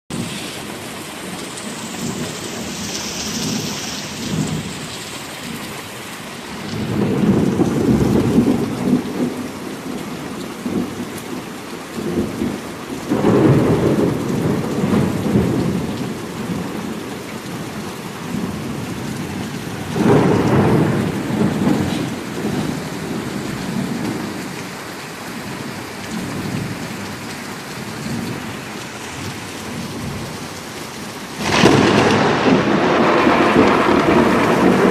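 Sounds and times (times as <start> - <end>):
heavy rain falling: 0.1 - 34.9
thunder rumbling: 6.5 - 11.4, 12.0 - 24.6, 25.4 - 34.9.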